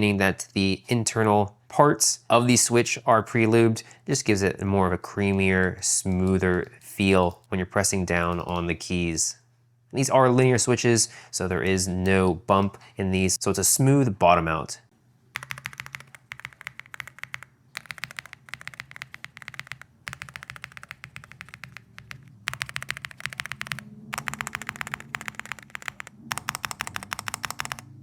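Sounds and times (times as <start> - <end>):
fast typing on mechanical keyboard: 8.2 - 8.7, 15.4 - 28.0.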